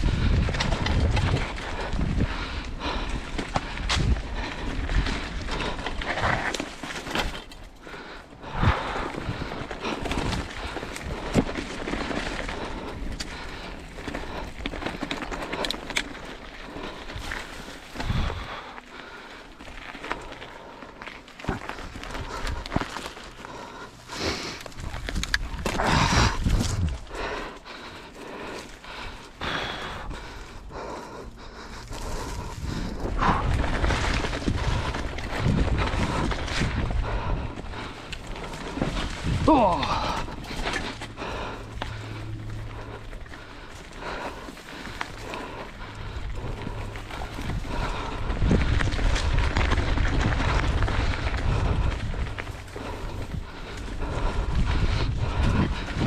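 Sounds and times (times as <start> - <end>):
wind on microphone: 0.0 - 2.6, 24.9 - 27.1, 46.5 - 56.0
bike clattering over bumps: 0.0 - 56.0
bike tyres rumbling over dirt: 0.0 - 56.0.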